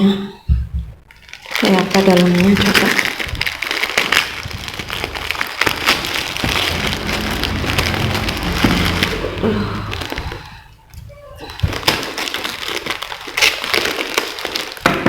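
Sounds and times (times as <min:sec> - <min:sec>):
plastic packaging crinkling: 0:01.1 - 0:08.2, 0:11.6 - 0:15.0.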